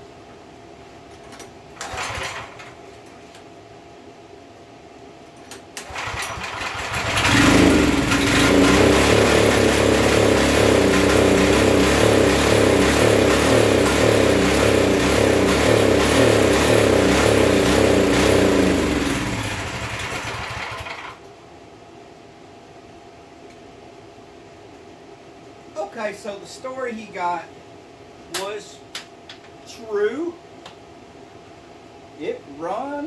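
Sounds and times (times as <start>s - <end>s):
pressure washer engine running: 5.9s - 21.2s.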